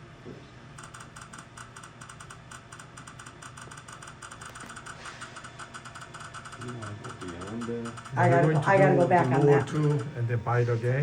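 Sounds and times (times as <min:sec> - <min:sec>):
steady low hum: 0:00.0 - 0:11.0
rapid light clicks: 0:00.8 - 0:08.2.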